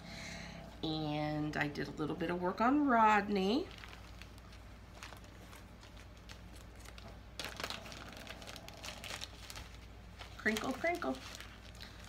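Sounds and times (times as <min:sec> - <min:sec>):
plastic crinkling: 0:03.1 - 0:12.0.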